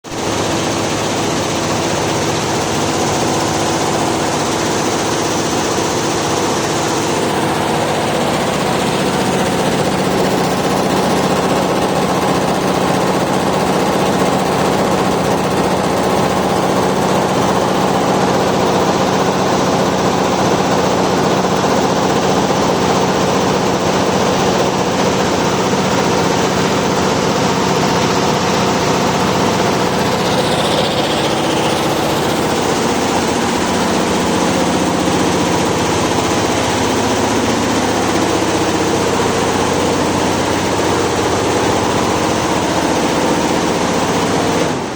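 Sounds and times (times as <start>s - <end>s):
embroidery machine clatter: 0.0s - 44.9s.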